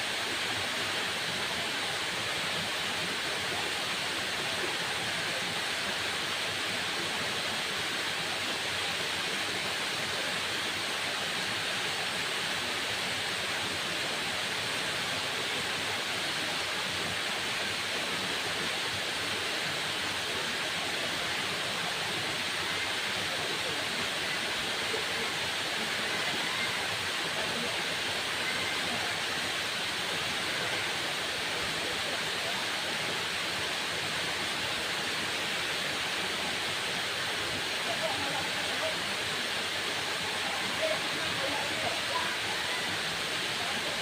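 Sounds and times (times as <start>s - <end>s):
waterfall rushing: 0.0s - 44.0s.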